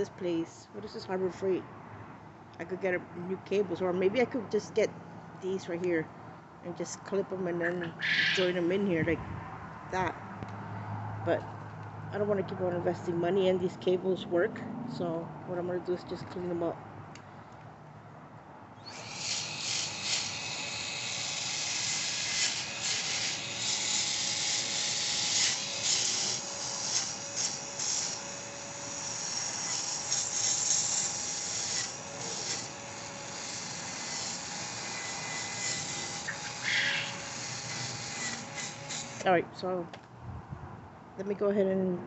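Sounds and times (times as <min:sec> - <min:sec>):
power drill scrubbing metal: 0:18.8 - 0:39.3.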